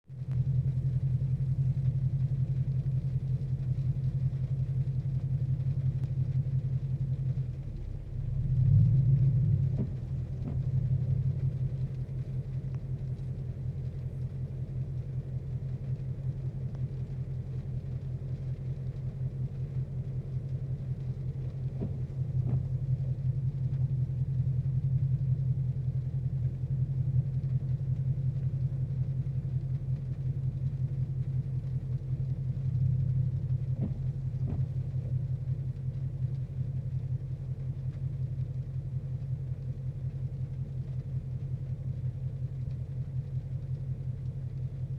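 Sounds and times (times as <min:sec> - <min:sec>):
car engine rough idle: 0:00.1 - 0:44.9
windshield wiper strokes: 0:07.1 - 0:23.8, 0:32.7 - 0:35.3.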